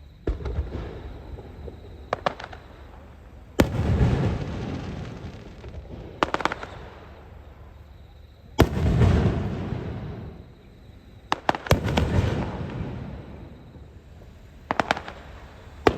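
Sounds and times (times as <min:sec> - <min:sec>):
crackling firework pops: 0:00.2 - 0:07.2, 0:08.6 - 0:10.1, 0:11.3 - 0:13.6, 0:14.6 - 0:15.9
firework booms with rumble: 0:00.2 - 0:07.3, 0:08.5 - 0:10.6, 0:11.3 - 0:15.9.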